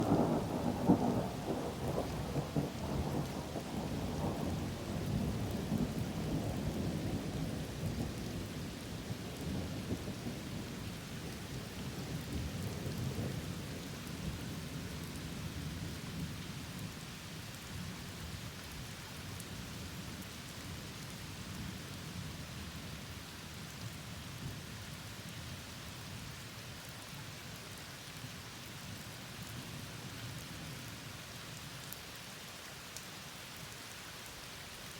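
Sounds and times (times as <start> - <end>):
thunder rumbling: 0.0 - 3.2
rain falling: 0.0 - 34.9.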